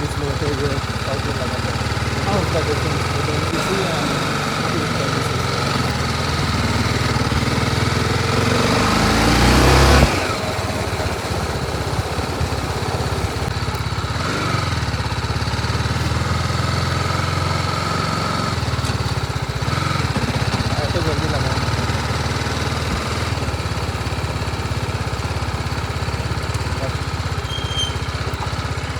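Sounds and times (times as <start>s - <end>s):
motorcycle engine idling and revving: 0.0s - 28.9s.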